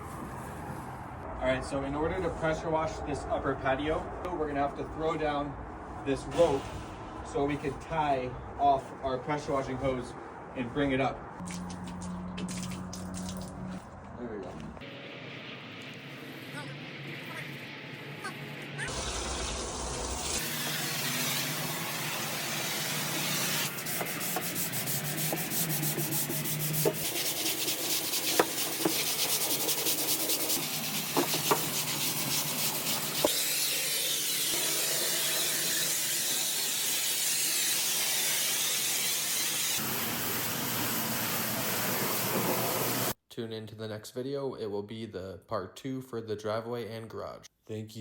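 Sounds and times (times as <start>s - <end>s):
pressure washer spray hissing: 18.9s - 43.2s.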